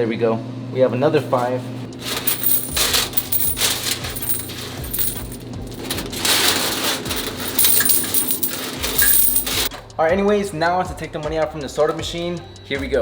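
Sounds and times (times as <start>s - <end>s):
coins jingling and clinking: 1.4s - 9.7s.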